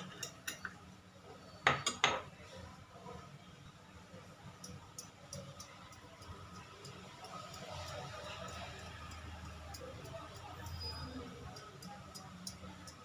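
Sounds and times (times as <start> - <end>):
cutlery clinking against a dish: 0.0 - 0.9, 1.7 - 2.3.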